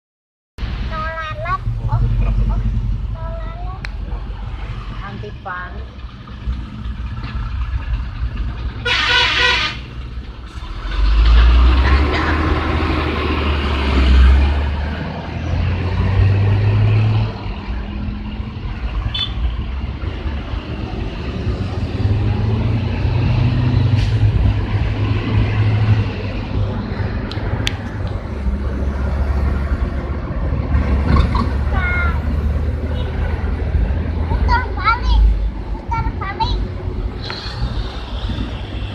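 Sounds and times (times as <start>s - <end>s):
heavy vehicles engine rumble: 0.6s - 38.9s
bus multi-tone horn: 8.8s - 10.0s, 19.1s - 19.4s.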